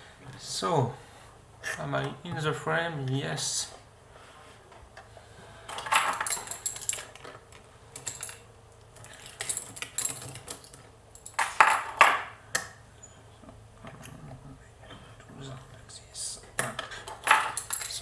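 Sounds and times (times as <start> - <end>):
metal lock clinking and rattling: 5.8 - 7.4, 8.0 - 8.4, 9.0 - 12.3, 17.2 - 18.0.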